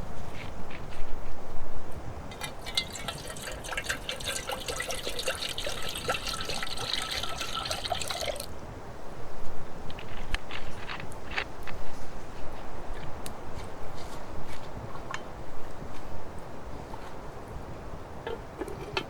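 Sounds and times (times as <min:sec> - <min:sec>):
liquid pouring into container: 0:02.3 - 0:08.5.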